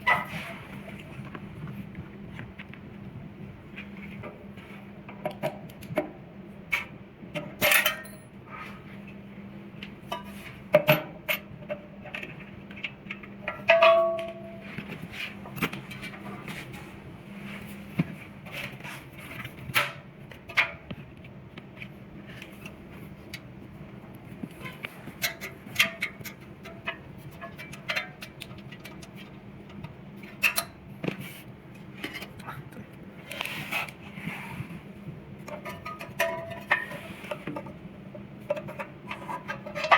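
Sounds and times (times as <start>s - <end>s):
low steady hum: 0.0s - 39.9s
metal parts clicking and clanking: 7.4s - 8.2s.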